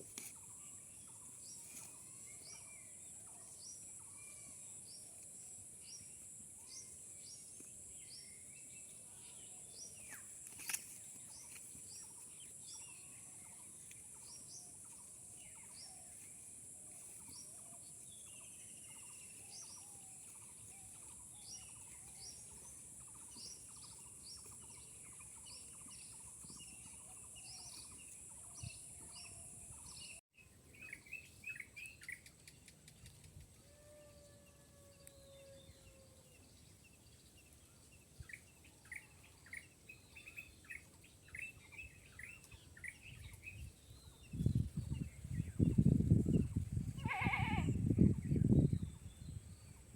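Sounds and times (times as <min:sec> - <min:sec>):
small birds chirping: 0:00.0 - 0:33.5, 0:35.8 - 0:49.9.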